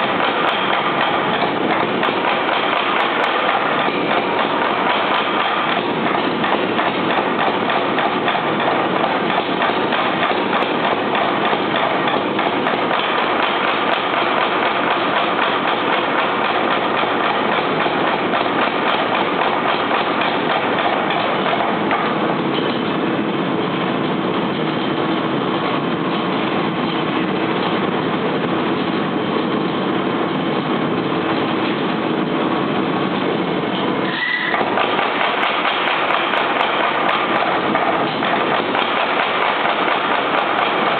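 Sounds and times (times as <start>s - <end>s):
power hammer pounding: 0.0s - 22.7s, 34.6s - 40.9s.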